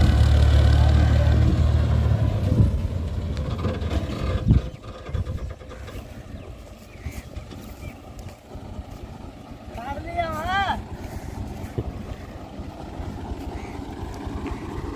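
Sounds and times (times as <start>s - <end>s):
tractor diesel engine under load: 0.0s - 14.9s
engine knock: 3.0s - 6.5s.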